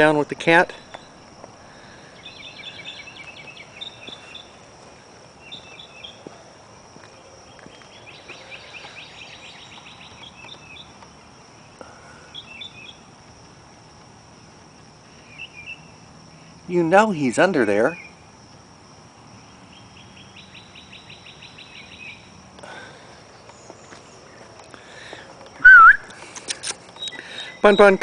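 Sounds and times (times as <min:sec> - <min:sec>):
songbird chirping trills: 0:00.0 - 0:13.2, 0:15.0 - 0:18.3, 0:19.4 - 0:28.0
insects droning: 0:00.0 - 0:28.0.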